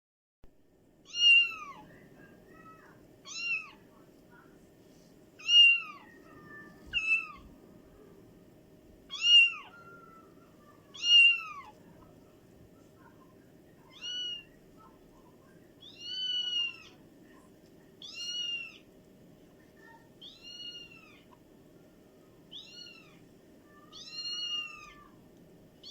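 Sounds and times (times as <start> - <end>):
cat meowing: 1.1 - 1.9, 3.2 - 3.8, 5.4 - 7.5, 9.1 - 10.2, 10.9 - 11.8, 13.9 - 14.5, 15.8 - 17.0, 18.0 - 18.9, 20.2 - 21.4, 22.5 - 25.2.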